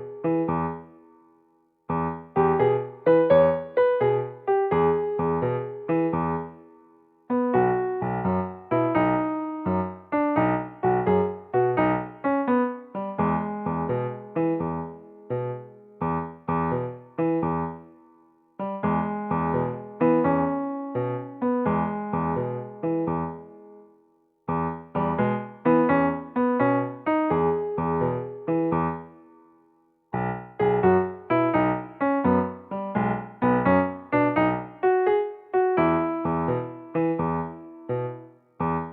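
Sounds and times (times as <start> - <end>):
piano music: 0.0 - 38.9.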